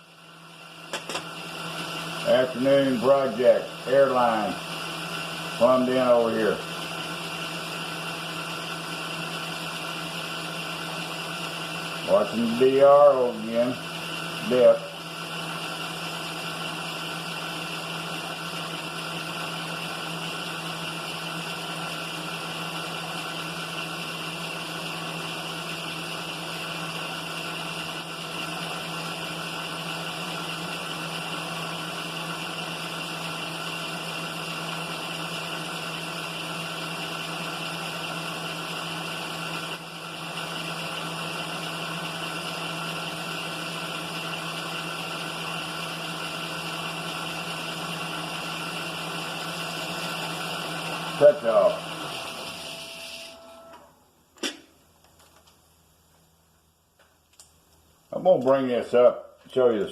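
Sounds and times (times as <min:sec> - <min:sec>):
milling machine humming and whining: 0:13.7 - 0:53.9.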